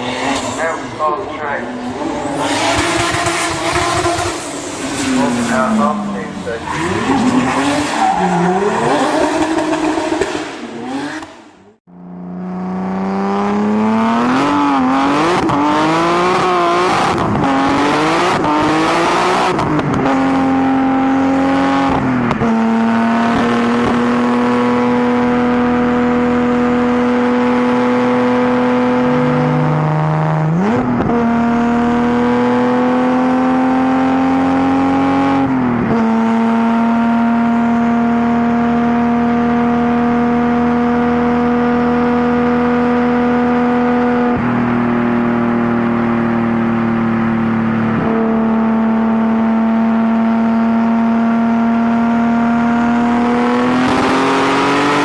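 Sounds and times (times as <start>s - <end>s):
car engine revving: 0.0s - 55.0s.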